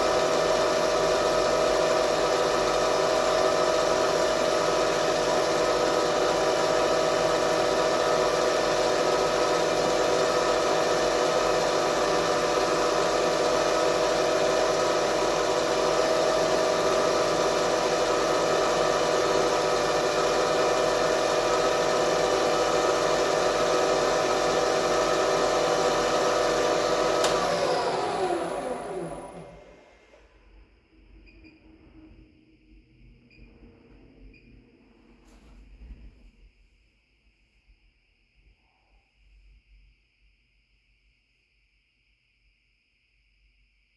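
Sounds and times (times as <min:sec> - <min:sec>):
mill spindle and motor running: 0:00.0 - 0:31.9.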